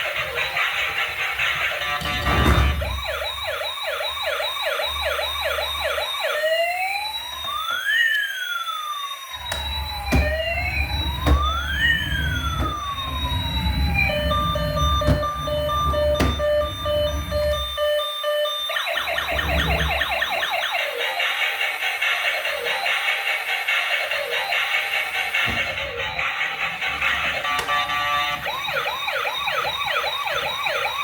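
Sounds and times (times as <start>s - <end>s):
electronic toy police siren: 0.0s - 31.0s.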